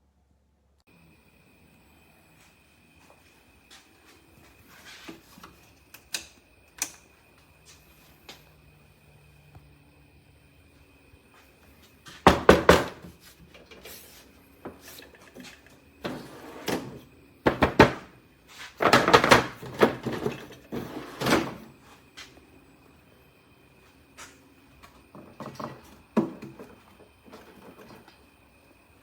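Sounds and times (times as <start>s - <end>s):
drawers clattering open and shut: 12.2s - 14.0s, 14.7s - 21.9s, 25.2s - 28.2s.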